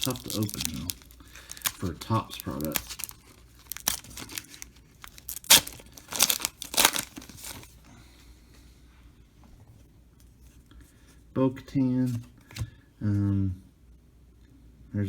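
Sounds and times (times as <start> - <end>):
foil wrapper tearing and crinkling: 0.0 - 7.7
faint handling of wrapper: 0.0 - 7.8.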